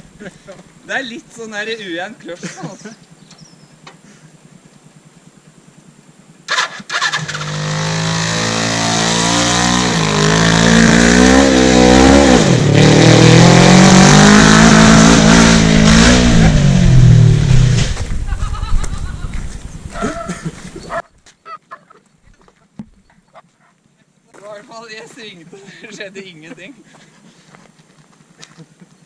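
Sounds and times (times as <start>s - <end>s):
motorcycle engine revving: 6.4s - 18.3s
knocks: 22.7s - 23.1s.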